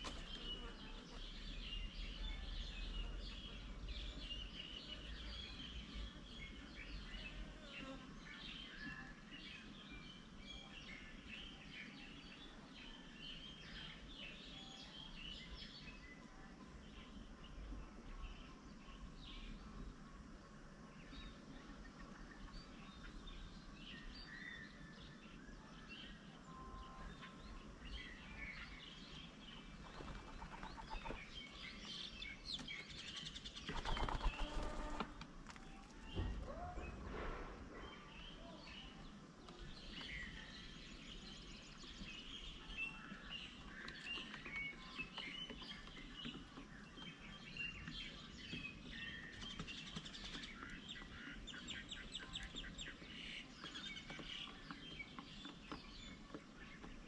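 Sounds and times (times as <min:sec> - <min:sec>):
small birds chirping: 0:00.0 - 0:57.0
rustle: 0:25.8 - 0:56.8
low thump: 0:36.2 - 0:38.0.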